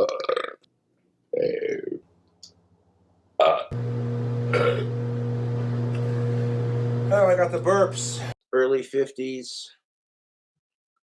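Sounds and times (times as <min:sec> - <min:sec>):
man burping loudly: 0:00.0 - 0:00.7, 0:01.3 - 0:02.0, 0:03.4 - 0:03.7, 0:04.5 - 0:04.9
steady low hum: 0:03.8 - 0:08.4.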